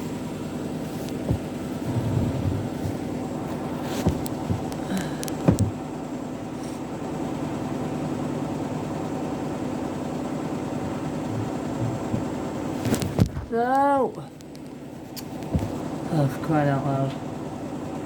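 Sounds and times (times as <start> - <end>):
washing machine spinning: 0.0 - 18.0
short knocks: 1.1 - 5.8, 10.9 - 13.4.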